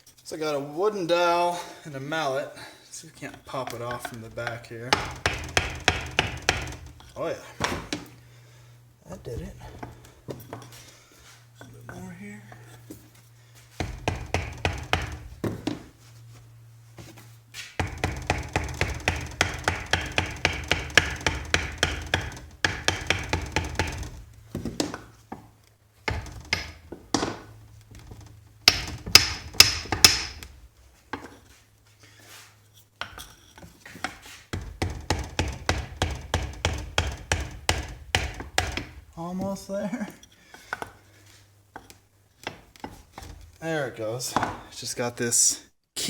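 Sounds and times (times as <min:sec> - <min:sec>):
mallet hammering on wood: 0:03.6 - 0:08.1, 0:13.8 - 0:15.8, 0:17.8 - 0:25.1, 0:26.0 - 0:27.5, 0:28.6 - 0:30.6, 0:34.0 - 0:39.6.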